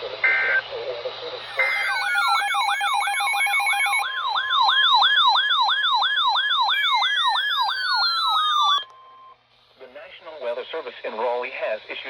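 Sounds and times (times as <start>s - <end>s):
steady alert tone: 1.4s - 8.8s
electronic siren warbling: 1.4s - 8.9s.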